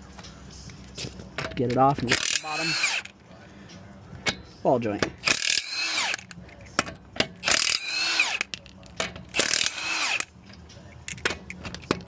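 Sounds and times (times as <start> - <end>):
tools clicking and clattering: 0.6 - 3.2, 4.2 - 12.0
impact wrench bursts: 2.1 - 3.1, 5.0 - 6.3, 7.3 - 8.5, 9.3 - 10.4.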